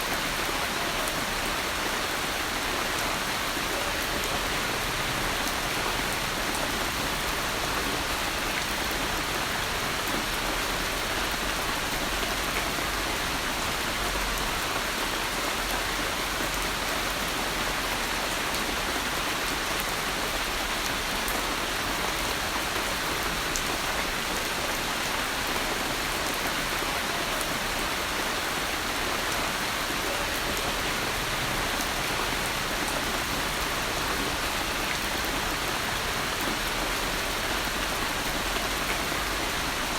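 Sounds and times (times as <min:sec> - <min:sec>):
rain pattering: 0:00.0 - 0:39.9.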